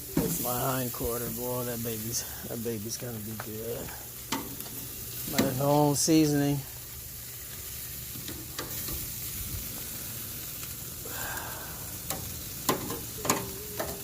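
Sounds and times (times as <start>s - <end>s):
meat sizzling on a grill: 0.0s - 14.0s
metal utensils clicking on grill: 4.3s - 5.9s, 8.2s - 9.1s, 12.0s - 14.0s.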